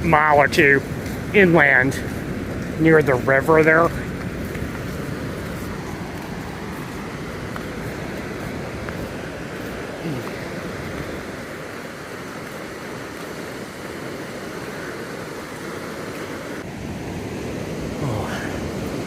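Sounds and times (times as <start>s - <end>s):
surf breaking on beach: 0.0s - 19.0s.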